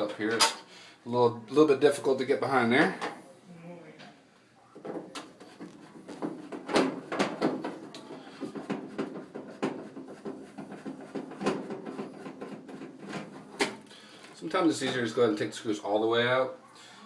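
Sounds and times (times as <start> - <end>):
sheet metal panel knocking: 6.0 - 13.8.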